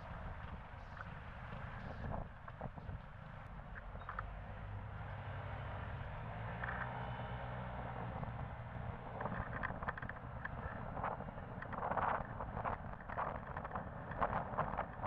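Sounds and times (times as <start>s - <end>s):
vehicle engine passing: 0.0s - 10.9s.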